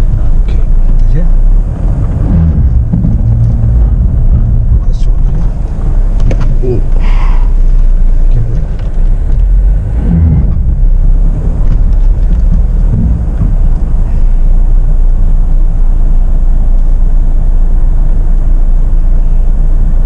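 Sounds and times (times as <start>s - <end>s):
vehicle engine rumbling off-road: 0.0s - 20.0s.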